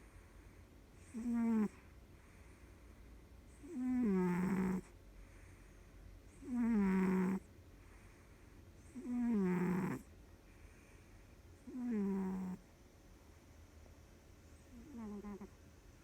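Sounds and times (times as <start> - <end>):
cat snoring: 1.0 - 2.6, 3.5 - 5.0, 6.3 - 8.1, 8.8 - 10.1, 11.6 - 12.6, 14.7 - 15.6.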